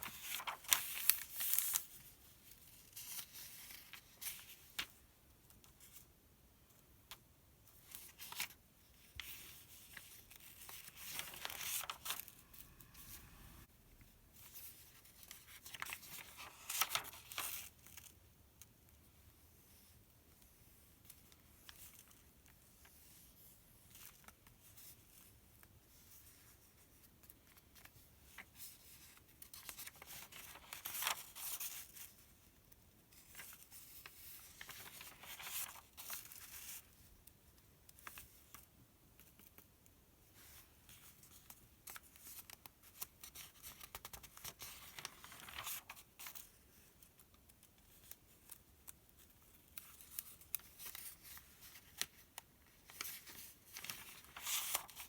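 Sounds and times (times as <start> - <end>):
paper pages rustling: 0.0 - 5.0, 7.8 - 13.7, 14.4 - 18.1, 27.5 - 32.2, 33.2 - 36.9, 40.4 - 55.0.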